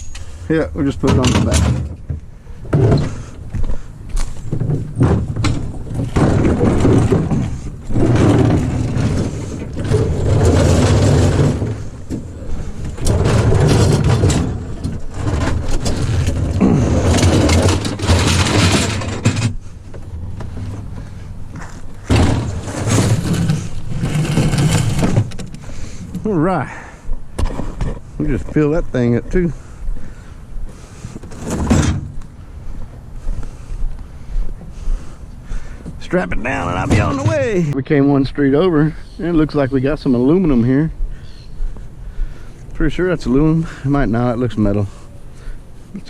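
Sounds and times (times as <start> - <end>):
scrap metal scraping and knocking: 4.5 - 19.7, 22.0 - 26.3.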